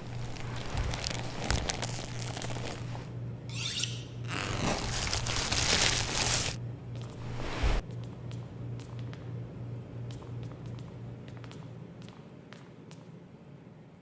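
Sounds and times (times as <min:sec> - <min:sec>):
crinkling and rustling: 0:00.0 - 0:03.1, 0:04.4 - 0:06.6
steady low hum: 0:00.0 - 0:14.0.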